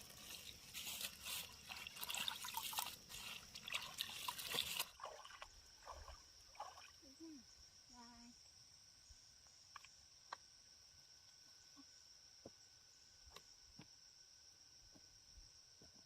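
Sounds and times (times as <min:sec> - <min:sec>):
water trickling and splashing: 0:00.0 - 0:07.4.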